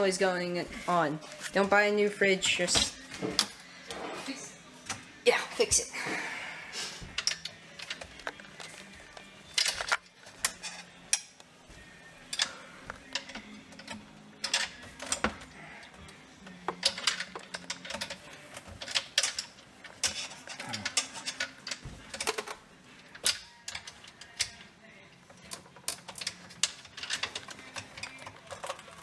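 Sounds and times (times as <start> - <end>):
faint background music: 0.0 - 29.0
hard plastic parts clicking: 7.1 - 11.5, 12.3 - 29.0.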